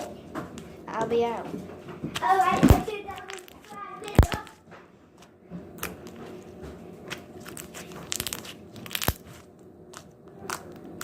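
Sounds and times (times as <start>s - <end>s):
slime squishing and popping: 2.7s - 4.6s, 7.1s - 11.0s.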